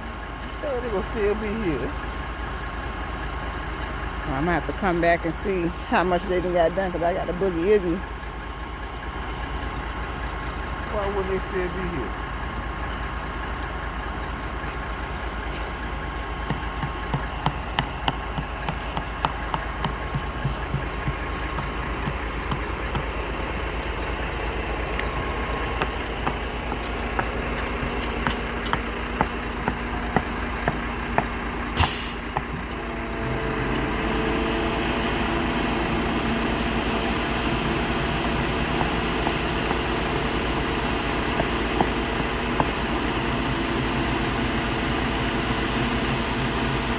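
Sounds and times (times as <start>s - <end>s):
diesel truck engine running: 0.0s - 46.9s
short hiss: 31.8s - 32.3s.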